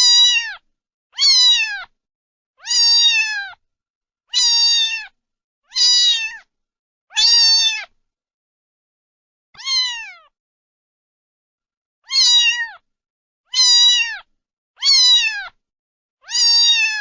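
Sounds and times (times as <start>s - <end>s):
cat meowing: 0.0s - 0.6s, 1.2s - 1.9s, 2.6s - 3.6s, 4.3s - 6.5s, 7.1s - 8.0s, 9.6s - 10.3s, 12.0s - 12.8s, 13.5s - 15.6s, 16.2s - 17.0s.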